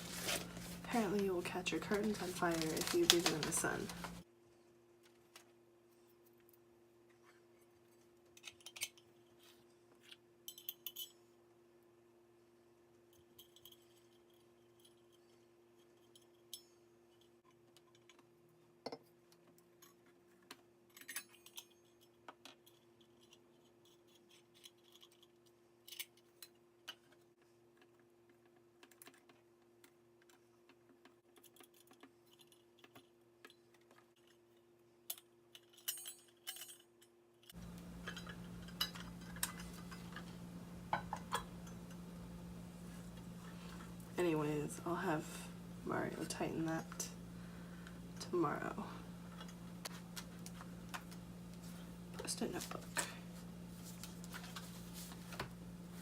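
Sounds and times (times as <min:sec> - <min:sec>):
household items clicking and tapping: 0:00.9 - 0:04.2
steady low hum: 0:37.5 - 0:56.0.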